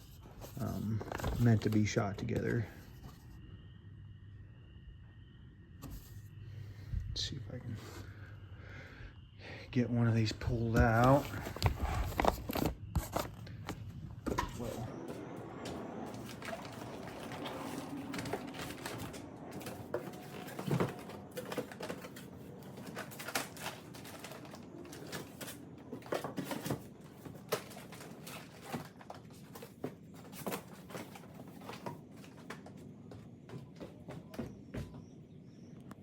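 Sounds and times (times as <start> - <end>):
cardboard rustling and scraping: 0.0 - 3.2, 10.5 - 32.9.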